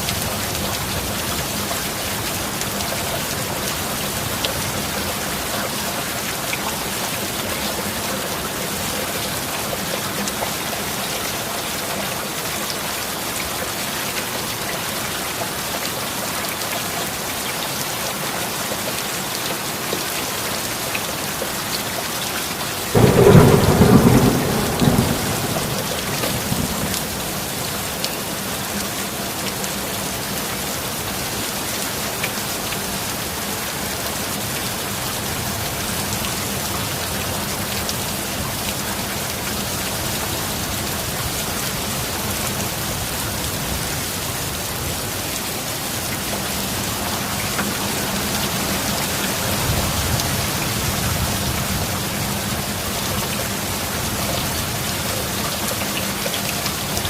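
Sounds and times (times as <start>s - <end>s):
steady rain hissing: 0.0s - 57.0s
thunderclap rumbling: 23.0s - 27.6s.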